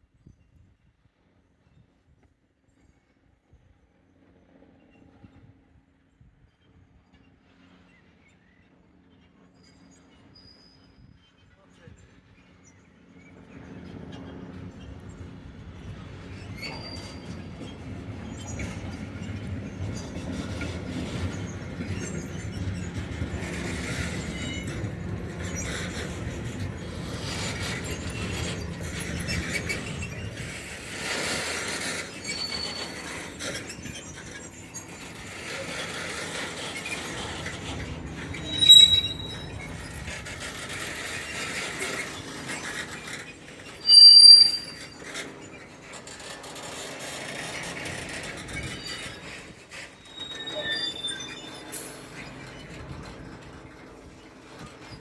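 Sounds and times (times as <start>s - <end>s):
railway wagons rumbling and rattling: 9.0s - 55.0s
piercing wheel squeals: 15.9s - 55.0s.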